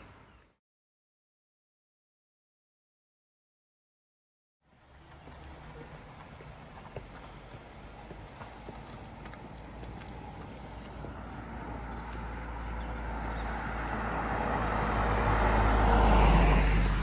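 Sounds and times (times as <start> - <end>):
vehicle passing by: 4.8 - 17.0.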